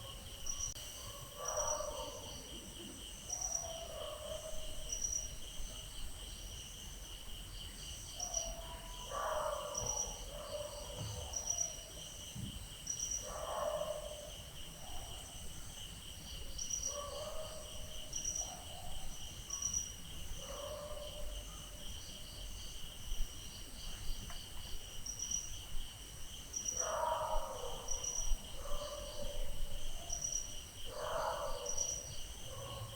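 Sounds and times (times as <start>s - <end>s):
crickets trilling: 0.0s - 32.9s
high insect chirp: 0.0s - 32.9s
dogs barking: 8.2s - 11.7s, 13.2s - 15.2s, 20.4s - 21.8s, 26.8s - 30.2s, 30.9s - 32.9s.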